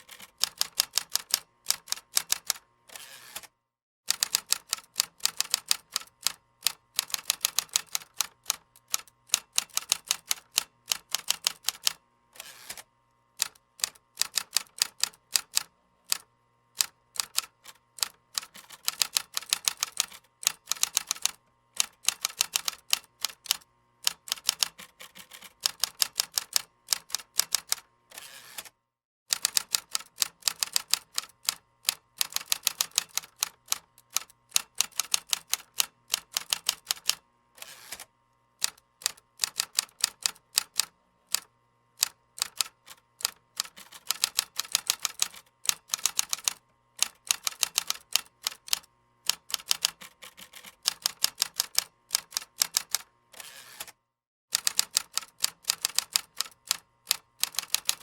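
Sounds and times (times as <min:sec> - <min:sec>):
keyboard typing clicks: 0:38.6 - 0:53.1, 0:53.8 - 0:58.0.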